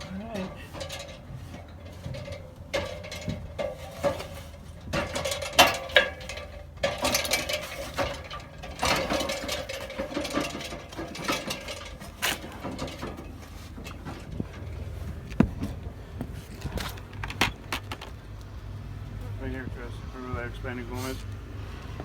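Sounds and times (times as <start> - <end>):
clanks clicks and rattles: 0.0 - 18.6.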